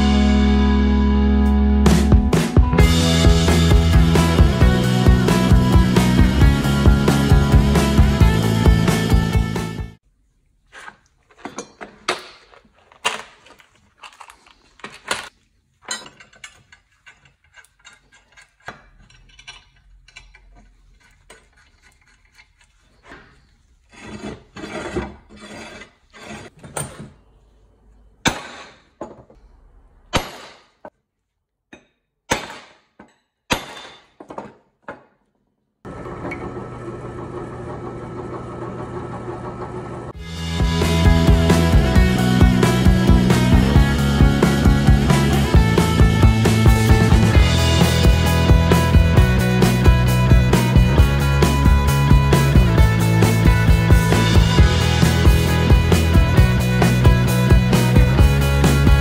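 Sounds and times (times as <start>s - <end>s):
background music: 0.0s - 10.0s, 40.2s - 59.0s
metal parts and tools clinking: 11.2s - 23.4s.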